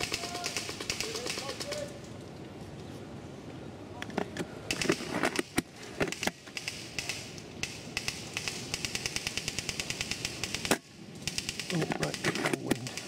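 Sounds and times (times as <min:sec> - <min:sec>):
airsoft guns firing full auto: 0:00.0 - 0:01.9, 0:04.7 - 0:13.0.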